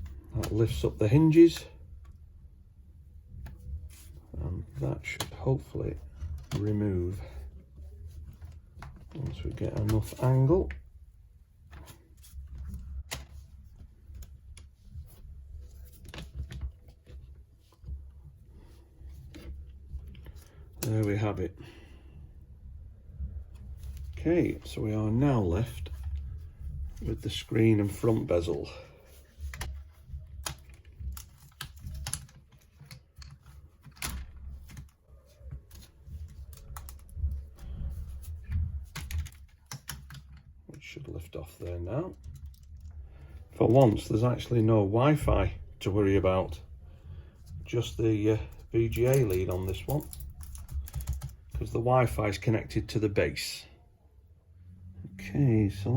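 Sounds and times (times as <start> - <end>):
low rumble of handling: 0.0 - 53.4
plastic laptop parts clicking: 29.4 - 37.4, 38.0 - 40.5, 48.9 - 51.6.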